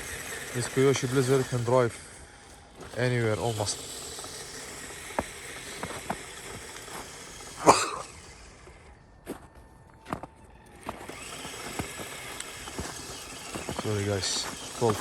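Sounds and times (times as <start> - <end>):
person coughing: 7.6 - 8.2.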